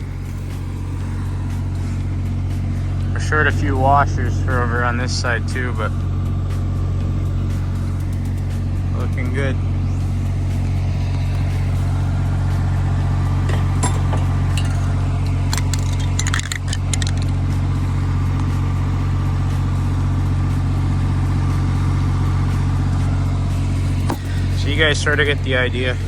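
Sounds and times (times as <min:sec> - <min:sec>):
engine idling: 0:00.0 - 0:26.0.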